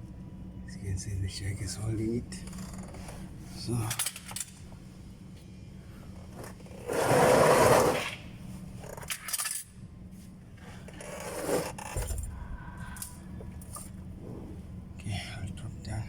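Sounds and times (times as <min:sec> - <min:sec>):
metal parts scraping and clinking: 0:03.8 - 0:04.6, 0:08.8 - 0:09.8
loud metallic scrape: 0:06.8 - 0:08.2.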